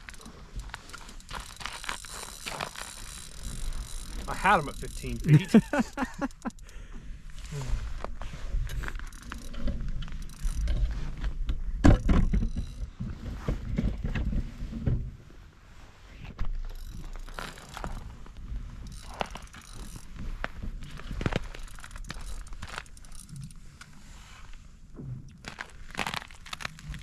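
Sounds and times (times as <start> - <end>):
fishing reel clicking: 0.1 - 6.8, 9.0 - 10.7, 18.8 - 20.1, 21.4 - 23.6.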